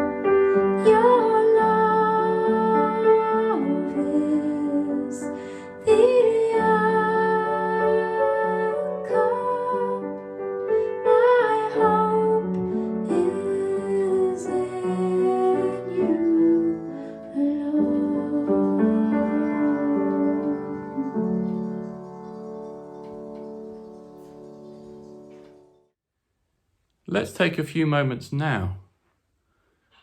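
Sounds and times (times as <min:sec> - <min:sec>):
piano accompaniment: 0:00.0 - 0:26.0
woman singing slow song: 0:00.6 - 0:21.6.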